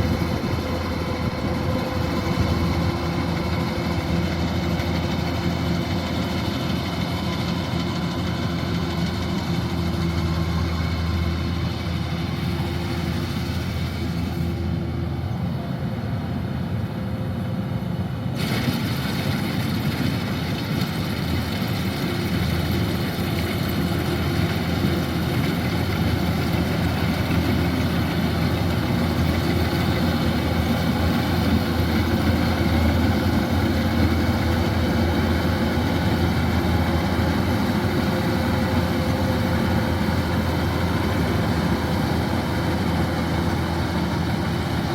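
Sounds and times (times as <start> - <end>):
combine harvester engine running: 0.0 - 44.9.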